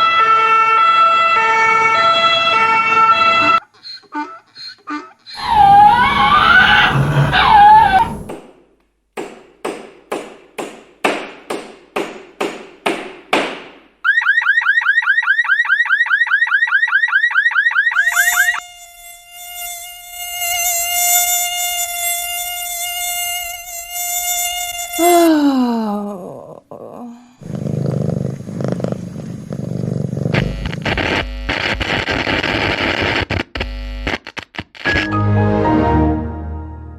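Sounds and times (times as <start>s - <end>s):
wailing gliding tone: 5.4s - 8.3s
sharp knocks: 9.2s - 13.9s
electronic alarm chirping: 14.1s - 18.6s
buzzing hum: 18.0s - 25.2s, 30.2s - 35.0s
loud dense static hiss: 30.3s - 34.9s.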